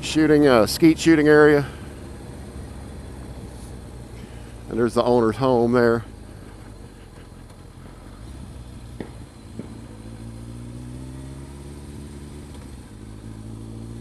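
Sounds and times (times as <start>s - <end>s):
motorcycle engine running: 0.0s - 14.0s.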